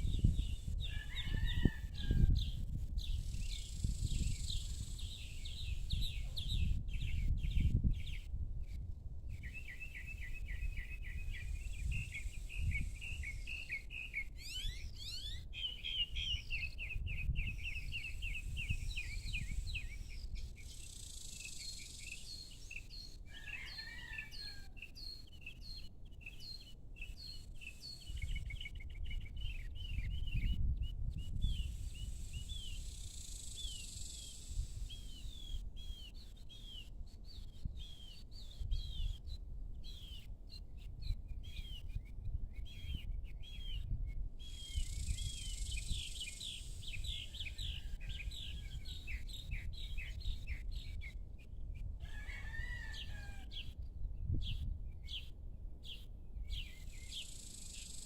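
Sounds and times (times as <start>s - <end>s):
small birds chirping: 0.0s - 8.3s, 9.4s - 58.0s.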